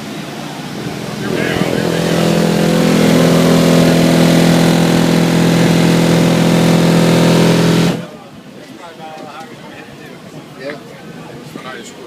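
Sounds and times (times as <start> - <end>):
loud buzzing tone from speakers: 0.0 - 8.1.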